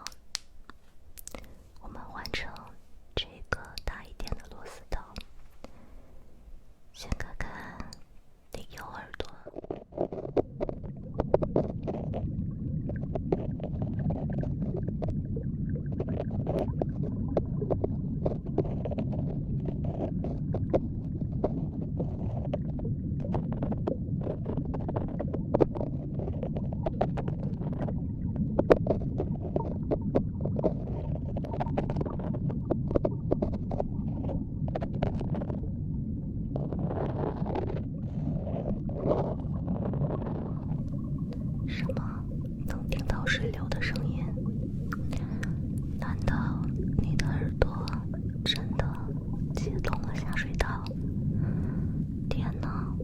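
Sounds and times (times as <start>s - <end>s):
small crackles and clicks: 0.0s - 5.9s, 6.9s - 35.8s, 36.5s - 53.0s.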